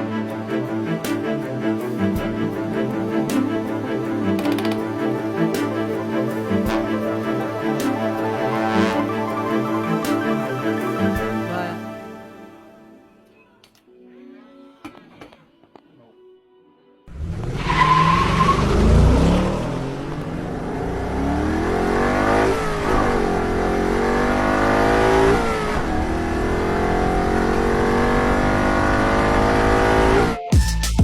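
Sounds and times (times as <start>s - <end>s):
engine revving: 17.1s - 30.4s.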